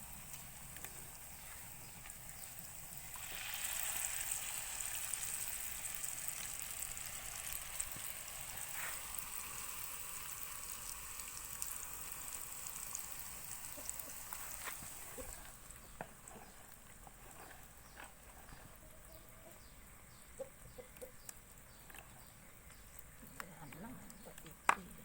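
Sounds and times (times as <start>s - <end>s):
hot oil sizzling: 0.0s - 18.2s
chickens clucking: 18.5s - 22.3s.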